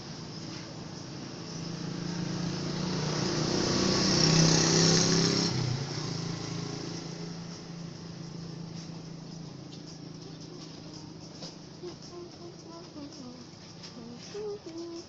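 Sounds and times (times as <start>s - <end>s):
engine passing by: 0.0s - 12.8s.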